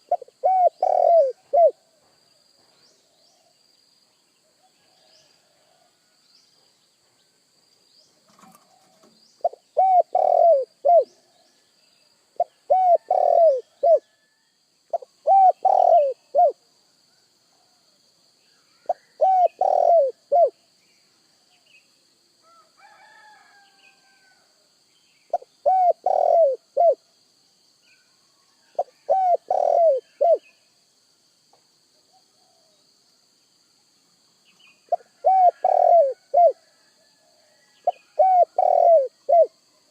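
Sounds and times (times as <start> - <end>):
dove cooing: 0.0 - 1.8, 8.3 - 11.2, 12.4 - 14.1, 14.9 - 16.6, 18.9 - 20.6, 25.3 - 27.0, 28.8 - 30.5, 34.9 - 36.7, 37.8 - 39.6.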